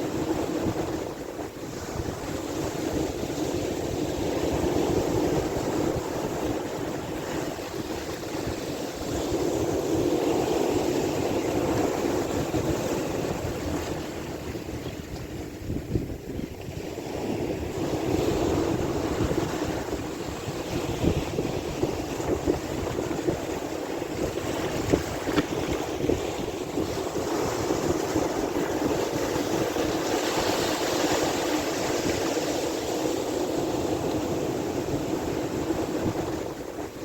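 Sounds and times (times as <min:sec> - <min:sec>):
wind buffeting microphone: 0:00.0 - 0:37.0
sea waves washing: 0:16.8 - 0:37.0.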